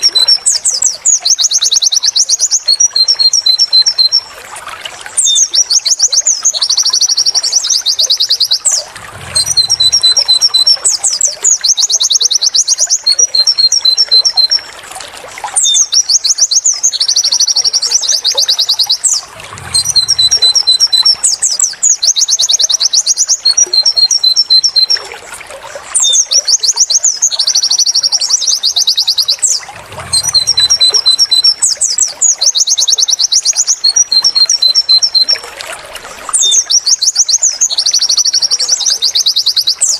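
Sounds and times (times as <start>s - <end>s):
bird high wit notes: 8.6s - 11.1s, 19.0s - 21.4s, 29.1s - 31.6s.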